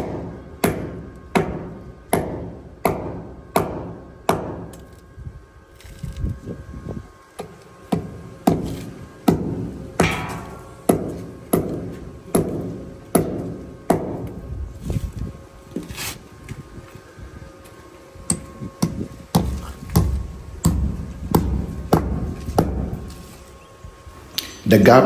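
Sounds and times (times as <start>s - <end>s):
ringing hammer blows: 9.3s - 14.3s.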